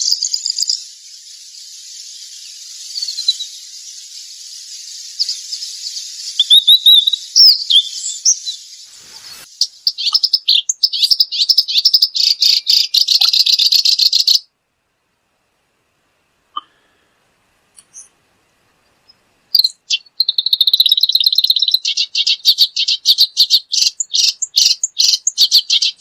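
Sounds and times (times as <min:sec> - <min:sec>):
steady high hiss: 0:00.0 - 0:12.2
songbird singing: 0:00.0 - 0:15.2, 0:17.8 - 0:26.0.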